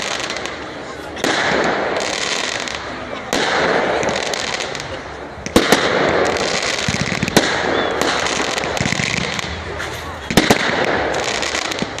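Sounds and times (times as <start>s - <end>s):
firework bangs: 0.0s - 12.0s
fireworks crackling: 0.0s - 12.0s.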